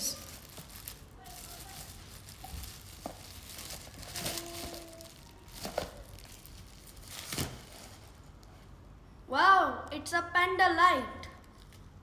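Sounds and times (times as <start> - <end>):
gift packaging crinkling and tearing: 0.0 - 8.4.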